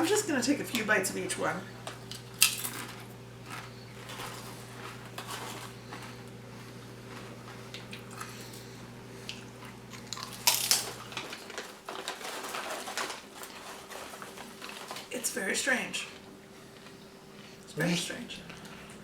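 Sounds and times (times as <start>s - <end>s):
low steady hum: 0.0s - 19.0s
person crunching potato chips: 2.1s - 15.1s.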